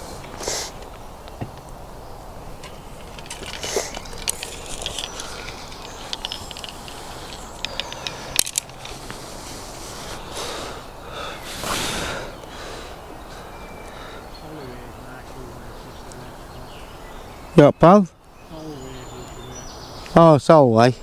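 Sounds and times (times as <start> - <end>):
fishing tackle clicking and scraping: 2.6 - 9.2.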